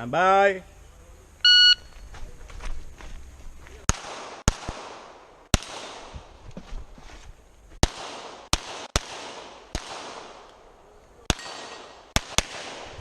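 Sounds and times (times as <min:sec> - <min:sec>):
pistol shots: 0:03.9 - 0:06.2, 0:07.8 - 0:10.7, 0:11.3 - 0:13.0.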